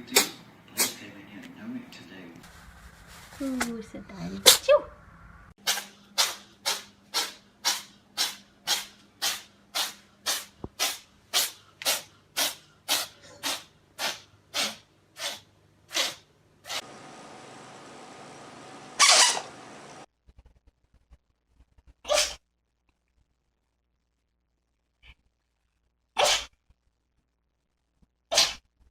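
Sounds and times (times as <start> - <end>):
cat sneezing: 0.0 - 1.0, 5.6 - 16.8, 22.0 - 22.4, 26.2 - 26.6, 28.3 - 28.7.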